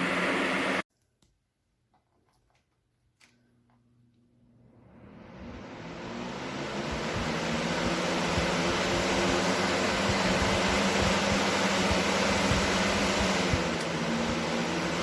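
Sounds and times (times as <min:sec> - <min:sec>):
box fan running: 0:00.0 - 0:00.8, 0:04.6 - 0:15.0.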